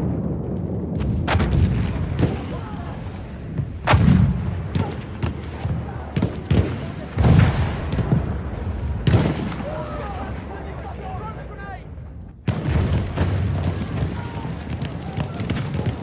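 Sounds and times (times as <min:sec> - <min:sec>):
heavy boom: 0:00.0 - 0:10.4, 0:11.9 - 0:16.0
gunshots cracking: 0:00.0 - 0:10.8, 0:12.4 - 0:16.0
artillery rumble: 0:00.0 - 0:16.0.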